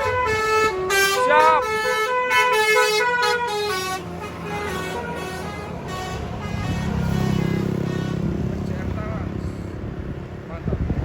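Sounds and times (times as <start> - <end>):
multi-tone air horn tune: 0.0 - 8.4
bus engine rumble: 0.0 - 11.0.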